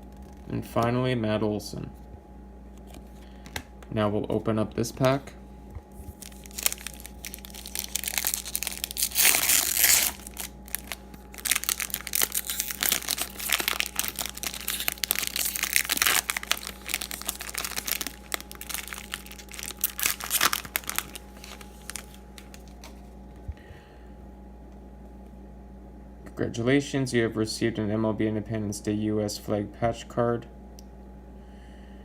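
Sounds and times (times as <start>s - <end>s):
wrapper tearing and crinkling: 5.9s - 23.0s.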